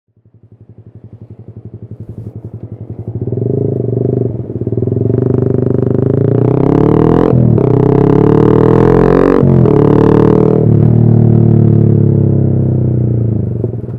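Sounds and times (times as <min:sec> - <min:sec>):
motorcycle engine idling: 0:00.1 - 0:06.6.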